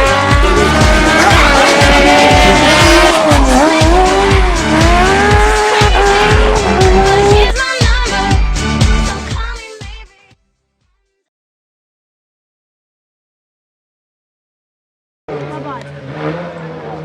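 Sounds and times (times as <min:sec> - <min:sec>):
held pitched synth line: 0:00.0 - 0:07.5
intro music with steady beat: 0:00.0 - 0:07.6.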